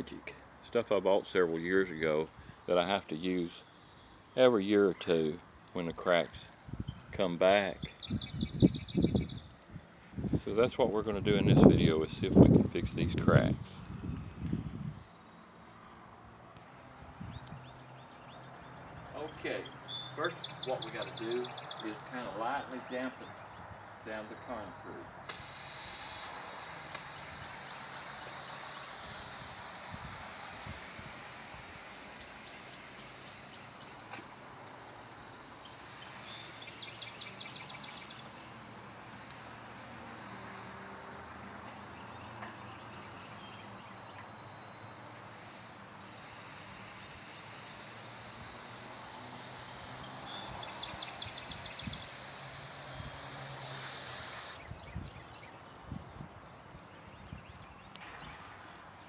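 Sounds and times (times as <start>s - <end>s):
bird trilling: 6.8s - 9.7s, 19.2s - 22.1s, 25.6s - 54.8s
hose spraying water on concrete: 20.2s - 22.0s, 25.2s - 54.7s.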